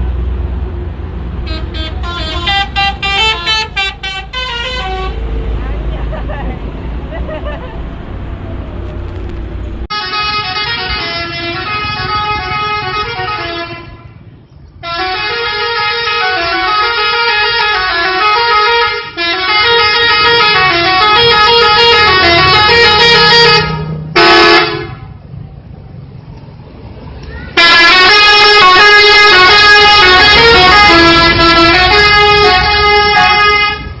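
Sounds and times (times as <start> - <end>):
bus horn playing multi-tone tune: 1.4 - 5.6, 9.9 - 14.2, 14.8 - 25.2, 27.5 - 34.0.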